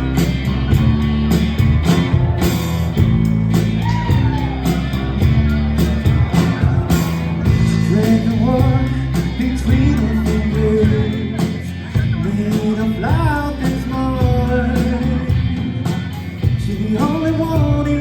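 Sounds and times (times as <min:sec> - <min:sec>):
bass guitar: 0:00.0 - 0:18.0
drums: 0:00.0 - 0:18.0
electric guitar: 0:00.0 - 0:18.0
lead vocal singing: 0:07.4 - 0:18.0.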